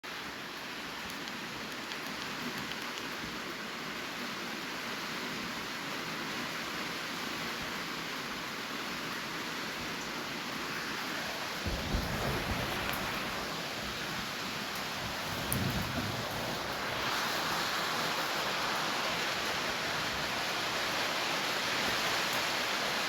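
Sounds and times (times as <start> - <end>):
steady rain falling: 0.0 - 23.0
thunder rumbling: 11.2 - 17.6.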